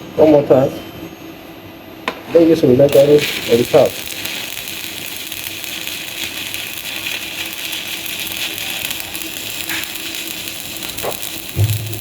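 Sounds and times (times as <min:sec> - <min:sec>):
electrode tapping: 0:02.9 - 0:12.0
welding arc crackling hiss: 0:02.9 - 0:12.0.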